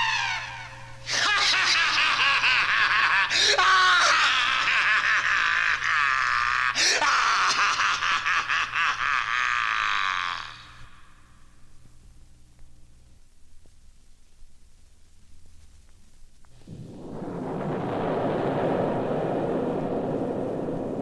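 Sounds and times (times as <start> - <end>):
voice shrieking and cackling: 0.0 - 11.0.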